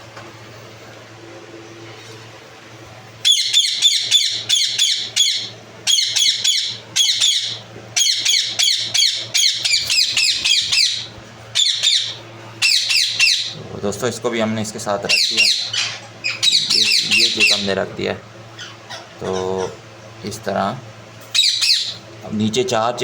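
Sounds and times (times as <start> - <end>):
low steady hum: 0.0 - 23.0
parakeet squawking: 3.2 - 13.6, 15.0 - 17.8, 18.5 - 19.8, 21.3 - 22.1.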